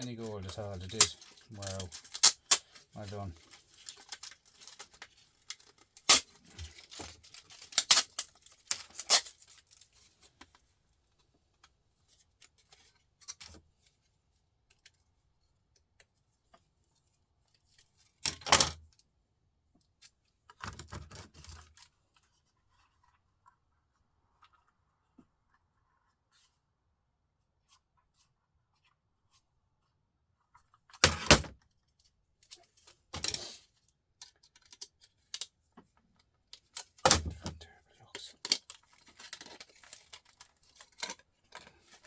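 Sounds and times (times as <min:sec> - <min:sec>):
laptop parts clicking and clattering: 0:00.0 - 0:10.6, 0:30.5 - 0:37.6, 0:38.3 - 0:42.0.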